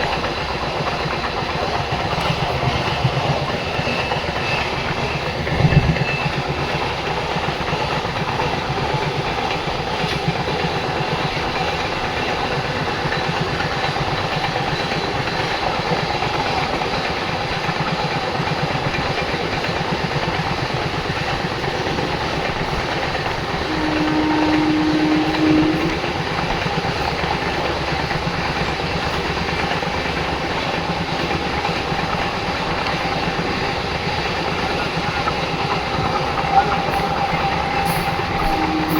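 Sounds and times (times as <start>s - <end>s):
train rumbling and clattering: 0.0s - 38.9s
steady tone: 35.0s - 38.9s.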